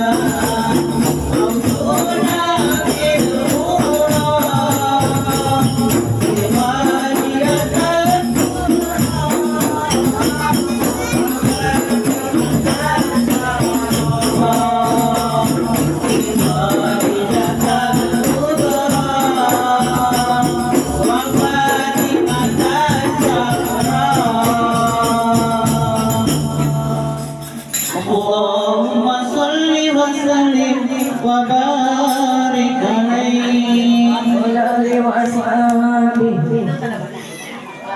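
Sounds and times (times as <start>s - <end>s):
rattling hand percussion: 0.0s - 28.4s
voices singing in unison: 0.0s - 37.9s.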